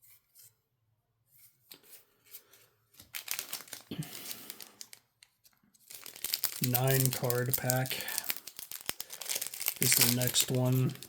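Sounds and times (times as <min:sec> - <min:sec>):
foil wrapper crinkling and tearing: 0:03.0 - 0:11.0.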